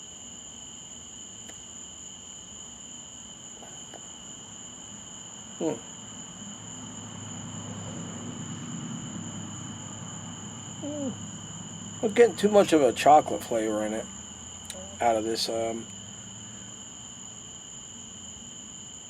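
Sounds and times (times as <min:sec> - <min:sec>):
crickets trilling: 0:00.0 - 0:19.0
person humming briefly: 0:10.8 - 0:11.2.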